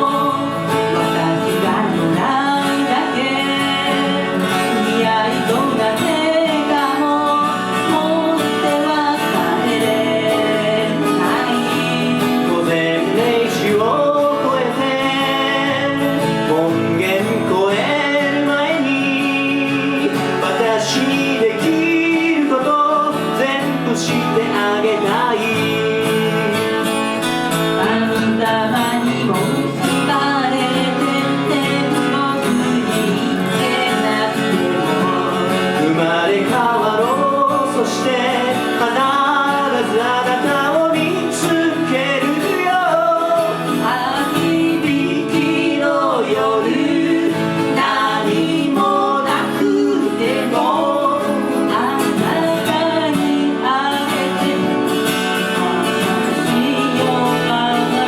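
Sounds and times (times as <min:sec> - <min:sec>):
ballad sung with guitar: 0:00.0 - 0:58.0.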